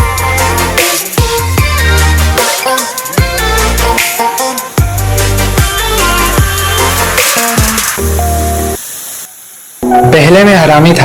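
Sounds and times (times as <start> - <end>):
music with heavy bass beat: 0.0 - 8.8.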